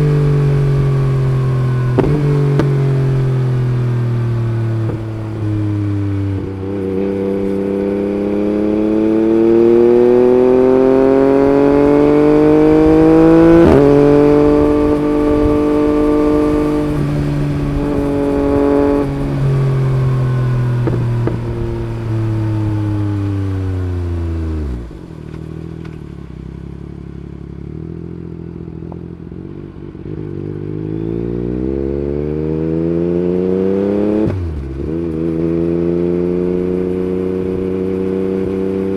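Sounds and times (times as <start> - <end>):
motorcycle engine idling: 0.0 - 7.9
motorcycle engine revving: 0.0 - 38.9.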